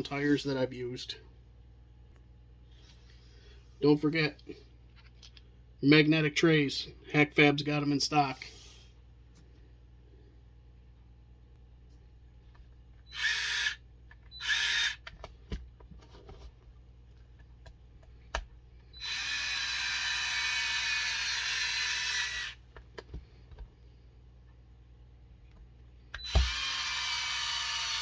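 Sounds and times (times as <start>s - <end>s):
cordless power driver running: 13.0s - 15.3s, 18.3s - 22.6s, 26.1s - 28.0s.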